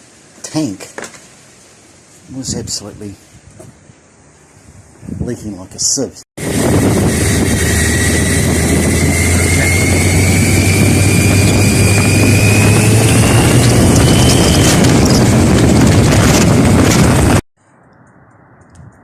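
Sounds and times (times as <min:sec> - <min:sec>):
motorcycle engine running: 0:06.4 - 0:17.4
thin engine whine: 0:06.4 - 0:17.5.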